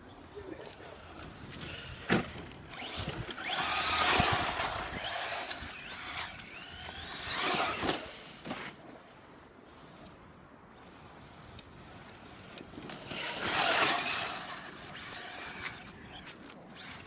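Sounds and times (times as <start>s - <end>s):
remote-control car motor whining: 1.0s - 8.7s, 12.6s - 17.0s
tyres scrabbling: 12.3s - 17.0s.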